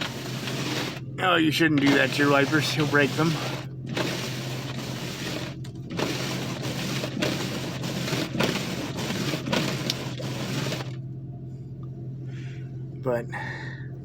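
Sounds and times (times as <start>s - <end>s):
wipers scraping icy windshield: 0.0s - 11.0s
car engine idling: 0.0s - 14.0s.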